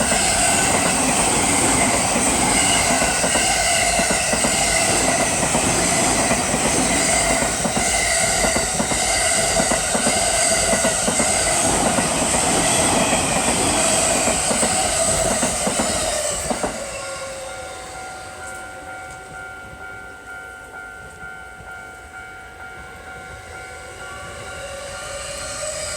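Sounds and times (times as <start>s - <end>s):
train clattering over rail joints: 0.0s - 16.9s
train wheels squealing on rails: 0.0s - 19.6s, 23.4s - 25.9s.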